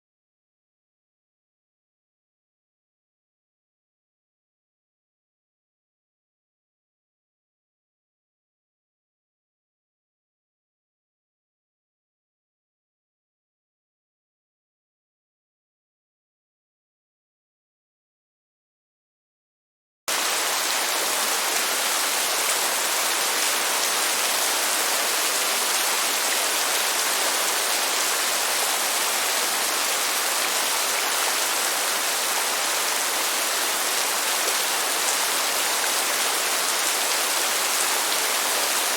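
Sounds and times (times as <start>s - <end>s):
hiss of heavy rain: 20.1s - 38.9s.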